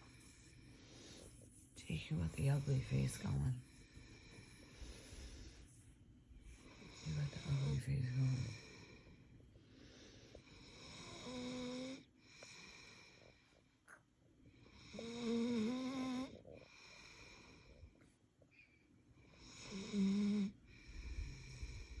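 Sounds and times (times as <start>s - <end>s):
dog breathing softly: 0.0s - 11.2s, 20.6s - 22.0s
dog snoring: 6.5s - 9.2s, 9.9s - 13.6s, 14.6s - 17.9s, 19.2s - 22.0s.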